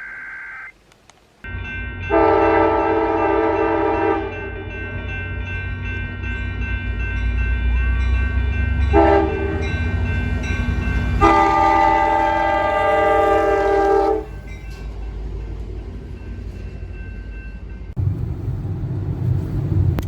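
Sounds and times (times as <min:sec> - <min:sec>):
low train rumble: 0:01.3 - 0:20.0
train horn blasts: 0:02.1 - 0:05.0, 0:08.7 - 0:10.1, 0:11.0 - 0:14.5.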